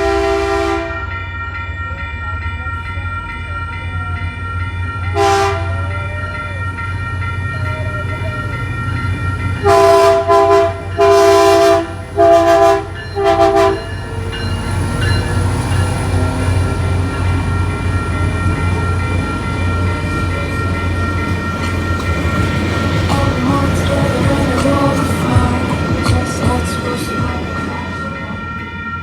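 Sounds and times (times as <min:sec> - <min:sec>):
locomotive air horn blasts: 0:00.0 - 0:01.1, 0:05.1 - 0:05.9, 0:09.6 - 0:13.9
crossing bell ringing: 0:00.0 - 0:29.0
train rumbling past: 0:00.0 - 0:29.0.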